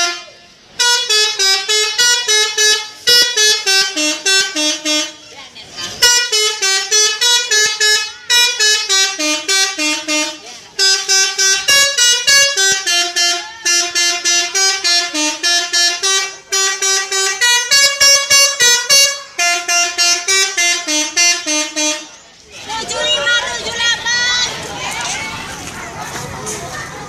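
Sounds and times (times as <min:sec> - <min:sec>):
musical horn playing tune: 0:00.0 - 0:05.2, 0:06.0 - 0:22.2.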